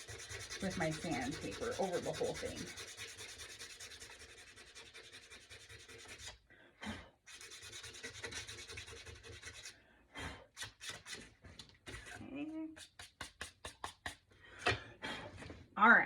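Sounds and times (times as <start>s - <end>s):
sandpaper rubbing on wood: 0.0s - 6.4s, 7.3s - 9.7s.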